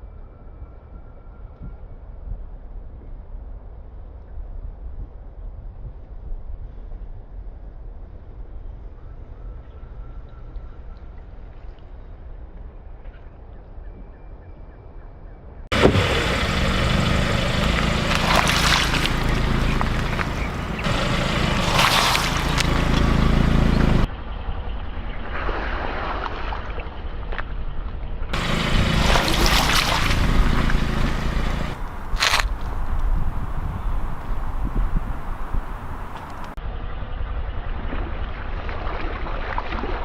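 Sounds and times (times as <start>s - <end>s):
car engine low rumble: 15.7s - 24.1s, 28.4s - 36.6s
tyres crushing floral foam: 31.8s - 33.1s.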